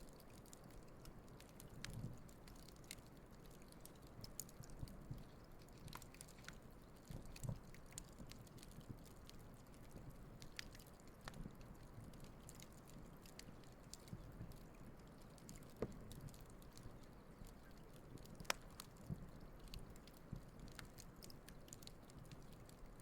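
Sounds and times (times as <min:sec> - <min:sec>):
campfire crackling: 0:00.0 - 0:23.0.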